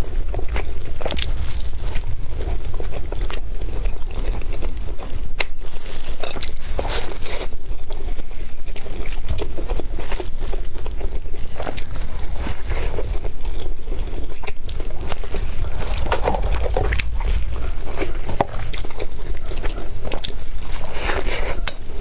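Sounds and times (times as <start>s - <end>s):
steady low rumble: 0.0s - 6.0s, 11.3s - 21.3s
crunchy chewing: 0.0s - 22.0s.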